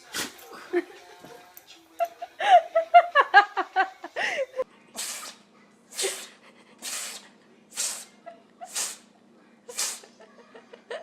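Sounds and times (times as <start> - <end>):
animal sneezing: 4.9 - 9.1, 9.7 - 10.1.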